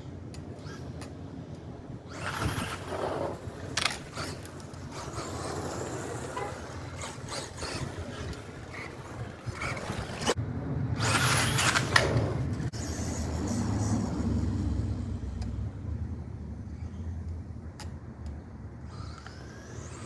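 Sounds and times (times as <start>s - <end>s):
rc car motor driving in bursts: 0.6s - 1.2s, 2.0s - 10.4s, 11.0s - 15.5s, 18.8s - 20.0s
tyres rushing over ground: 1.8s - 14.6s.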